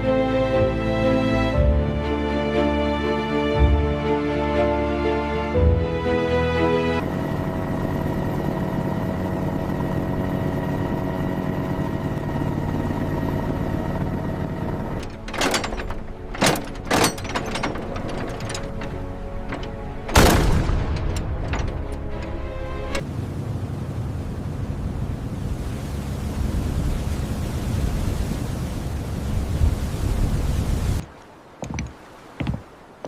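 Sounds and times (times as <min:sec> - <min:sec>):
background music: 0:00.0 - 0:10.4, 0:14.7 - 0:23.0
naval guns firing: 0:20.1 - 0:21.4.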